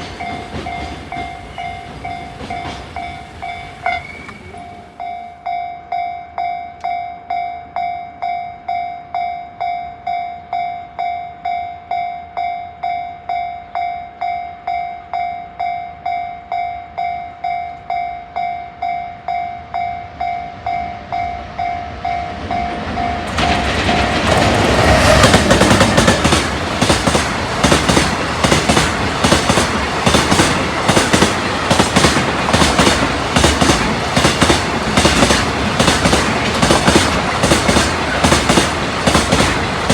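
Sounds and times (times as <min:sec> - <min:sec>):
train wheels clicking on rail joints: 0:00.0 - 0:05.2, 0:21.4 - 0:39.9.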